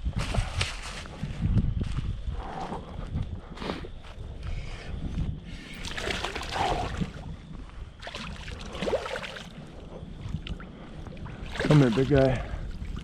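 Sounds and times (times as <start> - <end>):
wind rumble on microphone: 0.0 - 13.0
fish splashing and thrashing: 5.8 - 7.2, 8.0 - 10.6.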